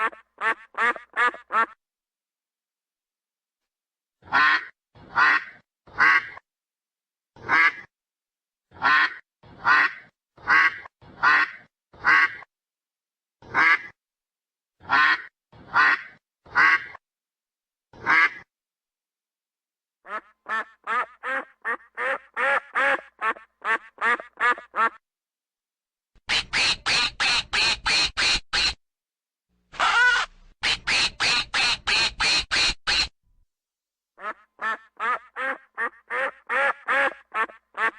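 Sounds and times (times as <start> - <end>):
duck quacking: 0.0 - 1.8, 4.2 - 6.4, 7.4 - 7.9, 8.7 - 12.5, 13.4 - 14.0, 14.8 - 17.0, 18.0 - 18.5, 20.1 - 25.0, 26.3 - 28.8, 29.8 - 33.1, 34.2 - 37.9.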